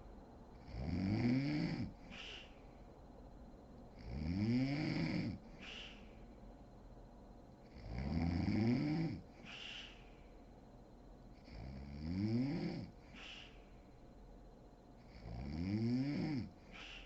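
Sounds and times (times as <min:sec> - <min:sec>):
woman snoring: 0:00.6 - 0:02.4, 0:04.0 - 0:05.4, 0:07.8 - 0:09.2, 0:11.6 - 0:12.9, 0:15.2 - 0:17.0
breathy puff: 0:02.1 - 0:02.6, 0:05.6 - 0:06.1, 0:09.4 - 0:10.1, 0:13.1 - 0:13.6, 0:16.7 - 0:17.0.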